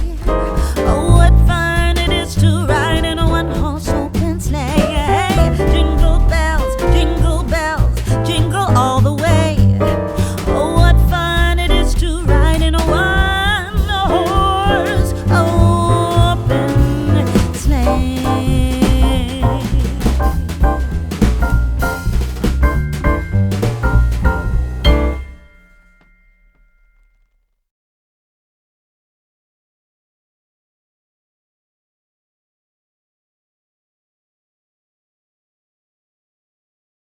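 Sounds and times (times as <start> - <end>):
song with singer and band: 0.0 - 21.6
drum kit beat: 0.0 - 26.0
bass: 0.0 - 26.9
piano: 0.0 - 26.9.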